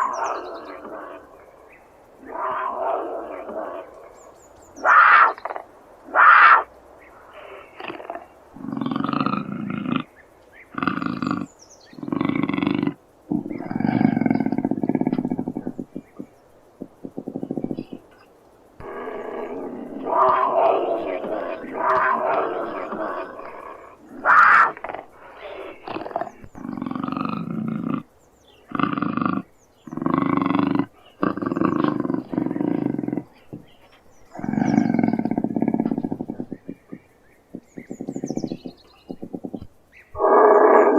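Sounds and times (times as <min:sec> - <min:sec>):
puma calling: 0:00.0 - 0:18.2, 0:18.8 - 0:40.9
high-pitched puma call: 0:04.8 - 0:06.7.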